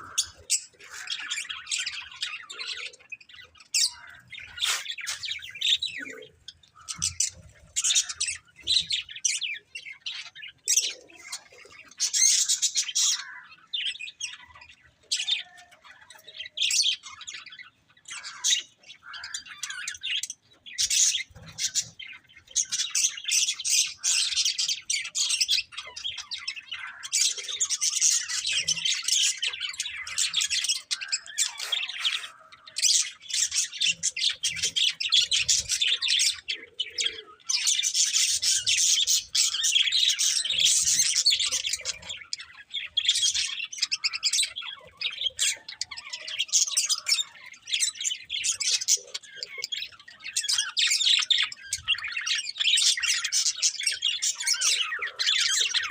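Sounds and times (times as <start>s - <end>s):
budgerigars chattering and warbling: 0.0s - 55.9s.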